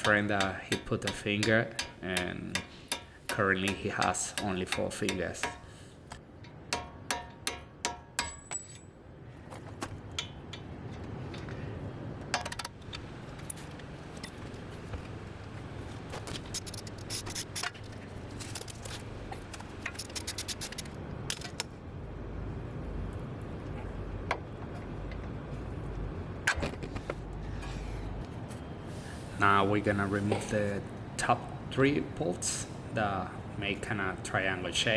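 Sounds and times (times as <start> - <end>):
hammer striking metal punch: 0.0 - 5.7, 6.7 - 8.9.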